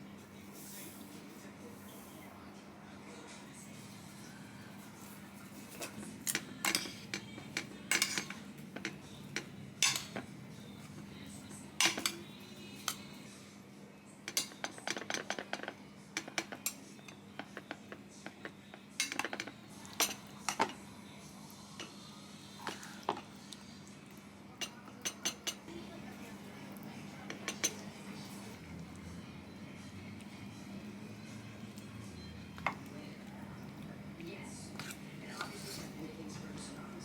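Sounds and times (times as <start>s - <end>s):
utensils clinking against a dish: 4.9s - 13.2s, 14.2s - 20.9s, 24.6s - 25.7s, 27.2s - 28.6s, 34.2s - 37.0s.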